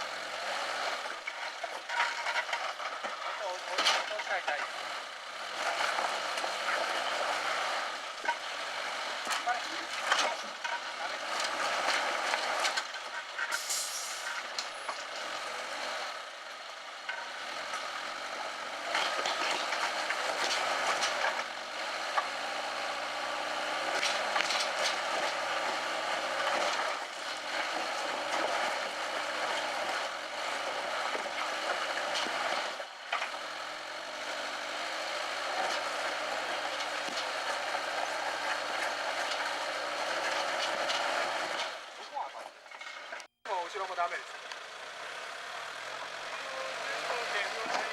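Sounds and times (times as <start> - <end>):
car engine at low revs: 14.4 - 47.9.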